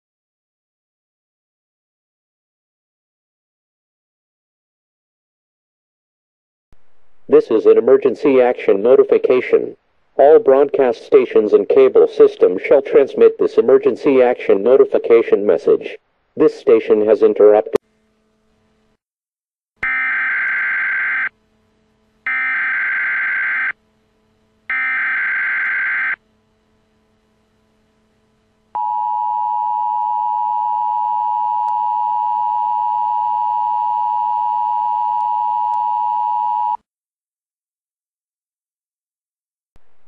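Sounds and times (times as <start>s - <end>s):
digital data tone bursts: 19.8s - 21.3s, 22.3s - 23.8s, 24.7s - 26.2s
two-tone attention signal: 28.8s - 36.8s.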